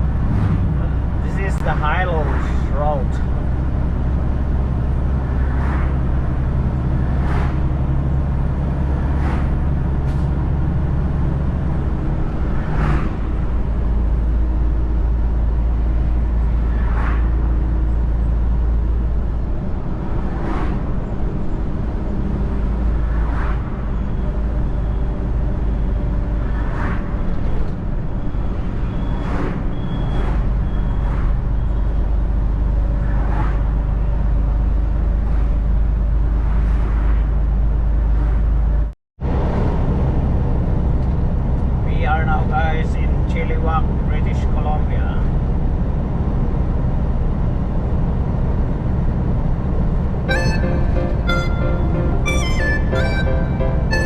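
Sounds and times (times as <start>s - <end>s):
truck engine droning: 0.0s - 20.1s, 50.0s - 54.0s.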